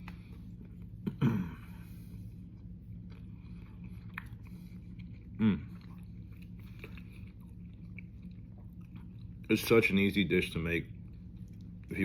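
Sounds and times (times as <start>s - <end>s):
steady low hum: 0.0s - 12.0s
faint chewing: 1.8s - 9.7s, 10.9s - 12.0s.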